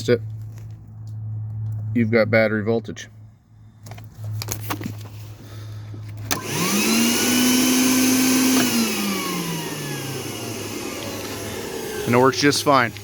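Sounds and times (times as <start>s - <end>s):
motor switch click: 6.3s - 7.6s, 8.3s - 12.0s
motor whine: 6.3s - 13.0s
vacuum motor rushing: 6.3s - 13.0s.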